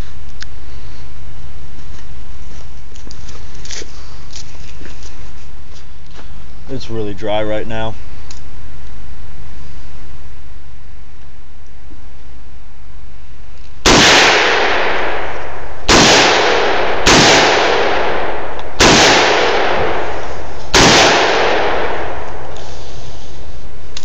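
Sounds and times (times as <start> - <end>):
rifle shots with echo: 13.8 - 22.9.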